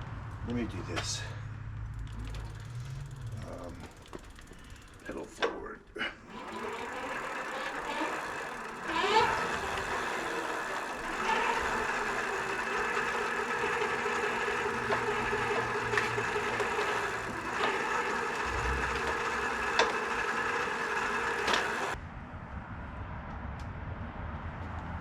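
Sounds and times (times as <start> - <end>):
bike motor and chain whirring: 1.7 - 5.5, 6.3 - 22.0.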